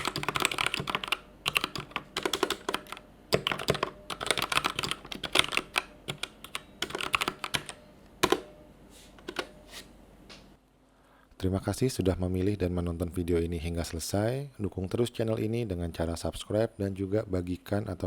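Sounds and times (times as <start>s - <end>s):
typing on mechanical keyboard: 0.0s - 8.4s.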